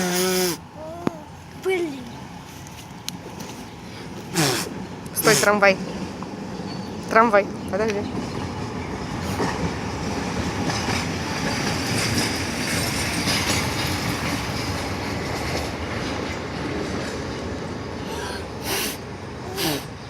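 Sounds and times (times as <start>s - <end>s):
high hiss from tram wheels: 0.0s - 0.6s, 9.2s - 20.0s
tram wheels rumbling on rails: 4.7s - 20.0s.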